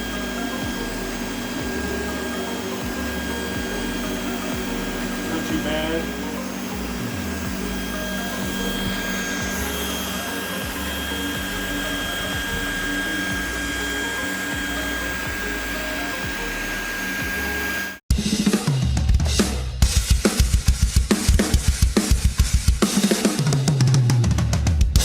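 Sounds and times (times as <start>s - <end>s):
cooling fans whirring: 0.0s - 18.0s
thin high whine: 0.0s - 18.0s
drum-heavy music: 0.0s - 25.0s.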